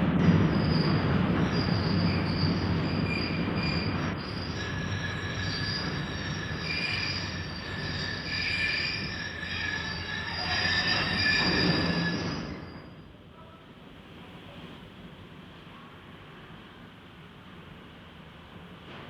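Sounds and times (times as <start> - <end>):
rumble of moving train: 0.0 - 19.0
train wheels squealing on rails: 0.1 - 13.5.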